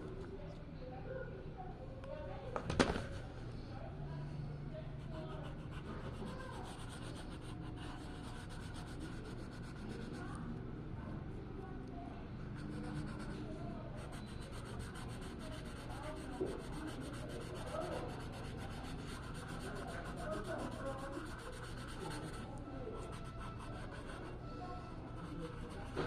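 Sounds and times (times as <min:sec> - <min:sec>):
brush scrubbing on paper: 0:05.2 - 0:10.3, 0:12.7 - 0:24.4, 0:25.0 - 0:26.0.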